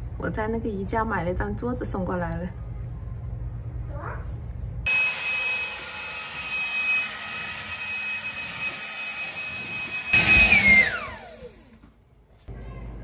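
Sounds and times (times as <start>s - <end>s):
motor-driven machine whining: 4.9s - 11.8s.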